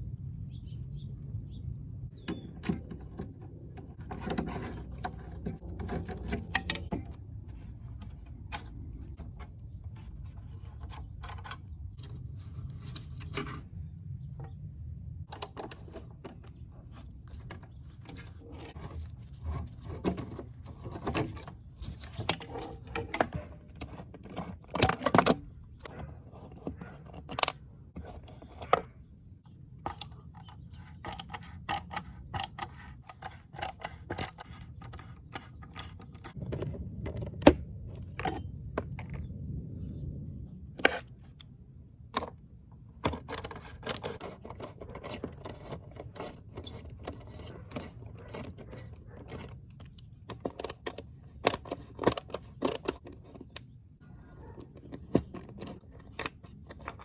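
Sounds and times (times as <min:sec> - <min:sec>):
metal parts and tools clinking: 0:02.3 - 0:12.3, 0:15.3 - 0:28.9, 0:29.8 - 0:39.4, 0:43.0 - 0:53.6, 0:54.4 - 0:57.0.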